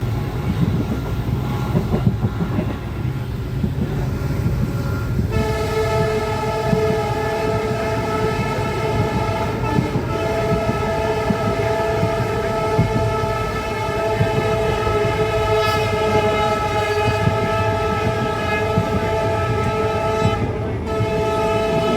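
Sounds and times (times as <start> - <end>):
low rumble of running train: 0.0 - 21.9
shrill locomotive air horn: 4.8 - 21.9.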